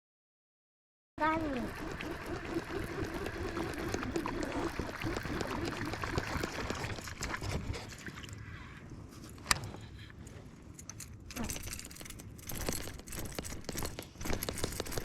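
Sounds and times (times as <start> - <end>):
water splashing and trickling: 1.2 - 9.0
small clicks and knocks: 10.8 - 15.0.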